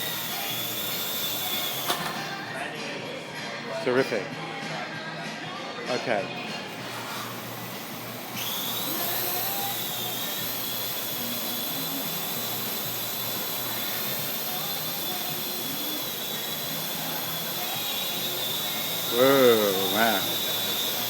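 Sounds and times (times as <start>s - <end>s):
drone motors whining: 0.0s - 2.4s, 7.1s - 21.0s.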